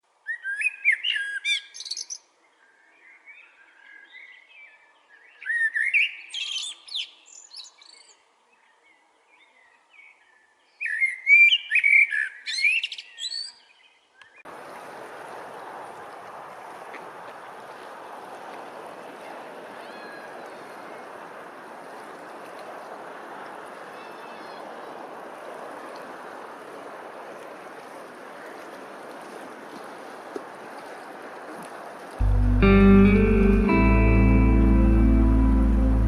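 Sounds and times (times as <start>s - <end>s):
songbird singing: 0.2s - 14.5s, 32.2s - 36.0s.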